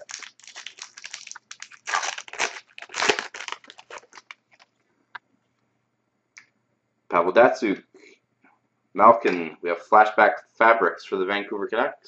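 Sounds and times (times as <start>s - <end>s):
foil wrapper tearing and crinkling: 0.0s - 4.7s.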